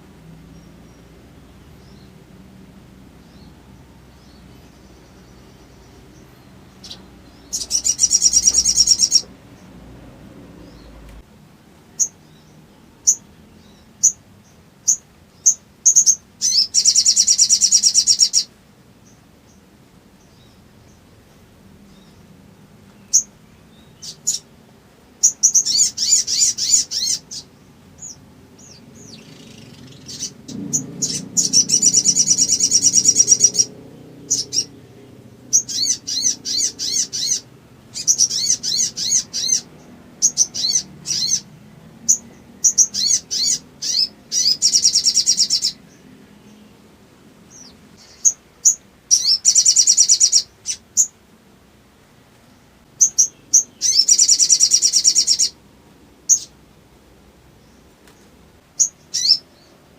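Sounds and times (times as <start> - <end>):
bird chirping and trilling: 3.2 - 11.2, 12.0 - 19.6, 23.0 - 24.5, 25.2 - 46.7, 47.5 - 51.2, 53.0 - 55.6, 56.3 - 56.6, 58.8 - 59.8.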